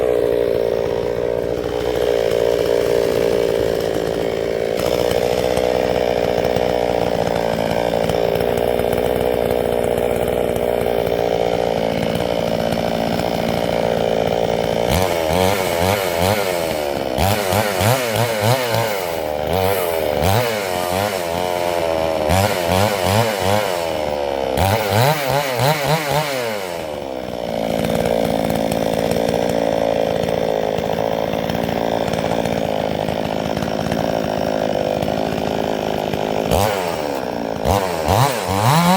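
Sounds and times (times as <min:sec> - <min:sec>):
chainsaw cutting through log: 0:00.0 - 0:38.9.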